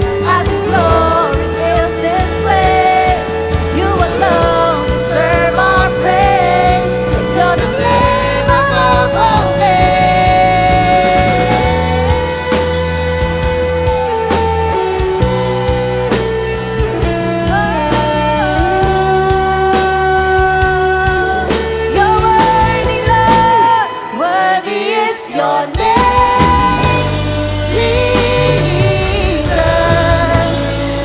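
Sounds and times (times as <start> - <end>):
person singing long notes: 0.0 - 13.1, 17.4 - 31.0
bass guitar: 0.0 - 24.3, 25.7 - 31.0
worship band playing: 0.0 - 31.0.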